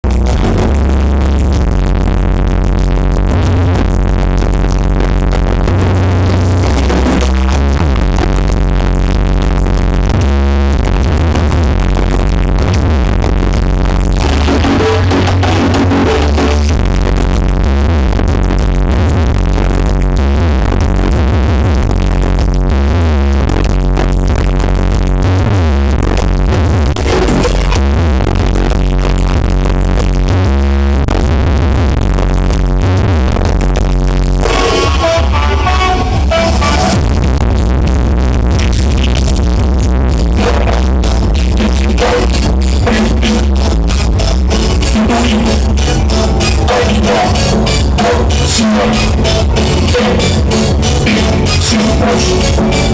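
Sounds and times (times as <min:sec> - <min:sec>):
drum machine beat: 0:00.0 - 0:22.8, 0:34.4 - 0:52.9
loud electronic dance music: 0:00.0 - 0:30.3, 0:34.1 - 0:52.9
heavy booming bass: 0:00.0 - 0:52.9.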